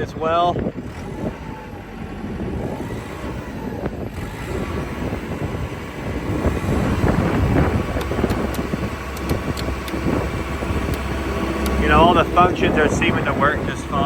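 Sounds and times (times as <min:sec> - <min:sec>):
diesel engine revving: 0:00.0 - 0:14.0
sharp clicks: 0:07.9 - 0:10.0, 0:10.9 - 0:11.9.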